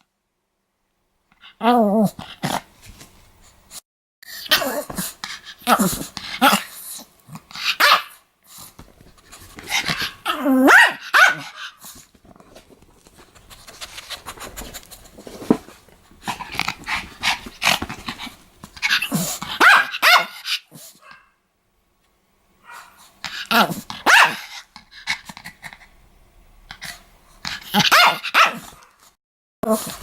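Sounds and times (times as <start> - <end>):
small dog barking and growling: 1.4 - 2.7, 4.4 - 8.2, 9.7 - 12.0, 16.2 - 21.3, 22.6 - 25.8, 26.7 - 29.0.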